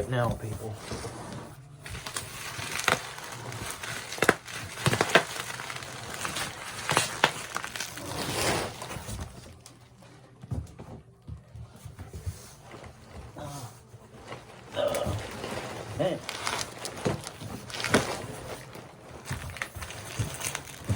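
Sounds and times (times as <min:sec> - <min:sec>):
packaging crinkling and rustling: 0:00.4 - 0:10.0, 0:12.4 - 0:20.9.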